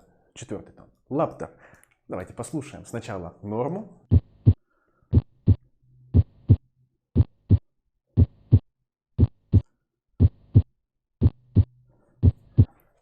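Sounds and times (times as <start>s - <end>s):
heartbeat lub-dub: 4.1s - 12.7s.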